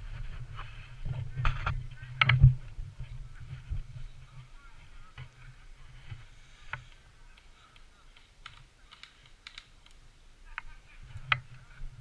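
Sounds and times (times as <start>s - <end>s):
sharp clicks and snaps: 7.4s - 10.0s.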